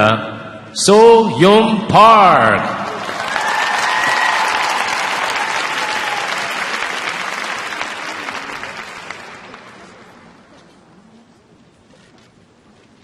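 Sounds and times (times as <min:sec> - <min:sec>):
audience applauding: 0:02.8 - 0:10.5.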